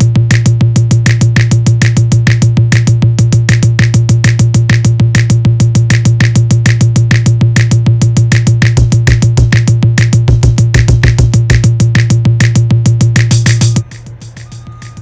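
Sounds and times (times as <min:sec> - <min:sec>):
drum machine beat: 0:00.0 - 0:15.0.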